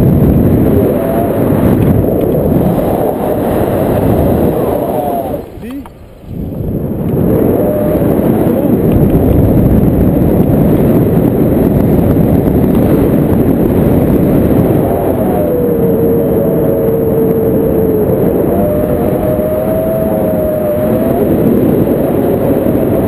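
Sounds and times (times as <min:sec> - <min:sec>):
wind buffeting microphone: 0:00.0 - 0:23.0
wavering tone: 0:00.4 - 0:05.6, 0:06.8 - 0:09.4, 0:14.2 - 0:23.0.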